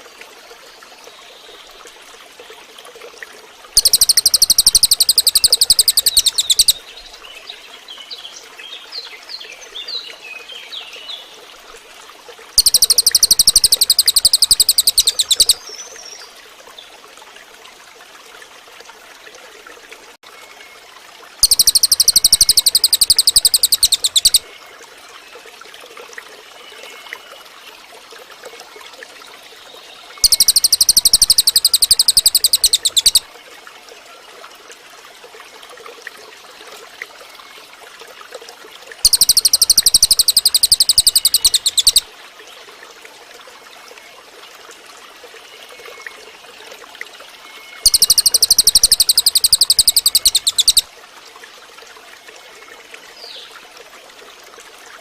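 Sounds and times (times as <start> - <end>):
stream trickling: 0.0 - 55.0
bird rapid high trill: 3.8 - 6.8, 12.6 - 15.6, 21.4 - 24.4, 30.2 - 33.2, 39.0 - 42.0, 47.8 - 50.8.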